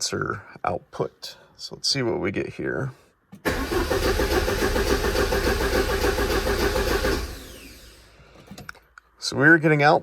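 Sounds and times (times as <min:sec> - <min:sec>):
starter motor cranking engine: 0:03.4 - 0:08.1.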